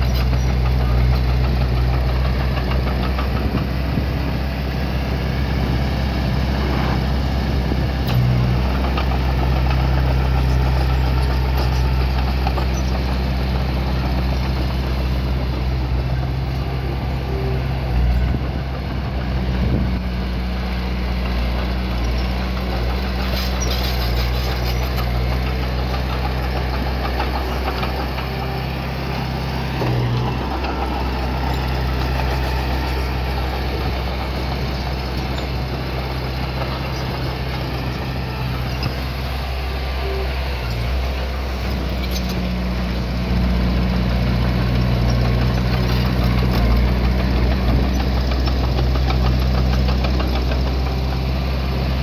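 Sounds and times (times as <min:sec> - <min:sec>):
diesel engine running: 0:00.0 - 0:52.0.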